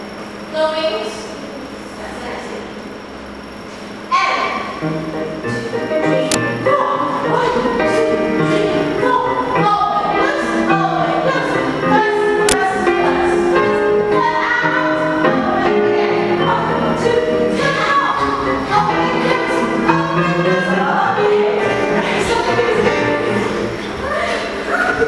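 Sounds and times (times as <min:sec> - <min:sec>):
music with singing voices: 0:05.5 - 0:25.0.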